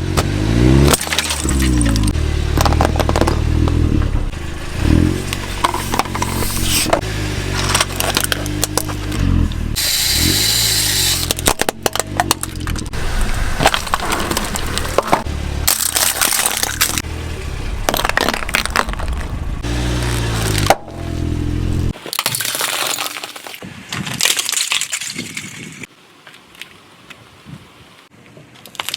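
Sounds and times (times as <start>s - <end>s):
car engine revving: 0.0s - 22.0s
tyres crushing objects: 0.1s - 3.8s, 10.2s - 17.1s, 17.7s - 21.3s, 21.9s - 25.7s
hissing burst: 9.8s - 11.3s.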